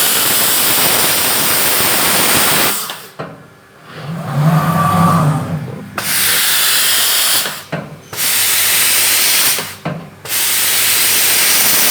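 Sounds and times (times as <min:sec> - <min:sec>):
compressed air hissing: 0:06.0 - 0:11.9.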